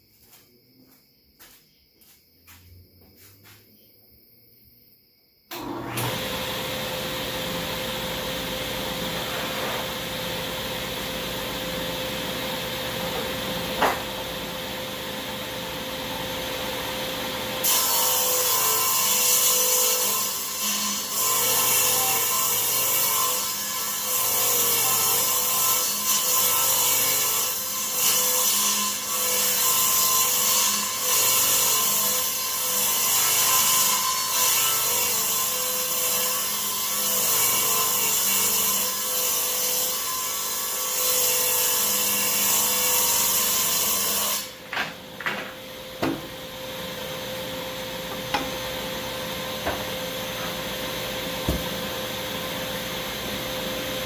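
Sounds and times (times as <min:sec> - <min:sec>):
saw whirring: 0:05.5 - 0:16.3
table saw cutting wood: 0:05.5 - 0:54.0.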